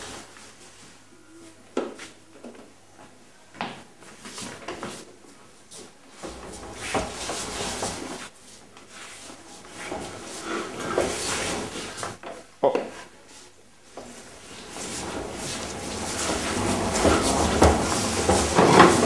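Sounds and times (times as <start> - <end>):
hard objects rattling and bumping: 14.7 - 19.0.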